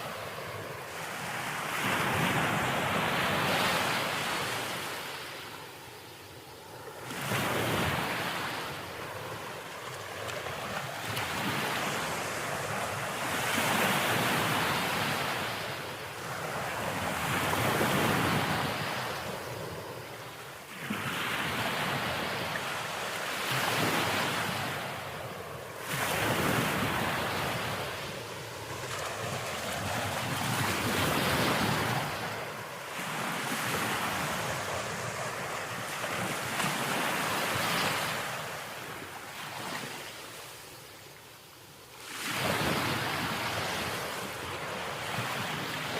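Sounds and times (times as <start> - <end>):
ocean waves breaking on beach: 0.0 - 45.9.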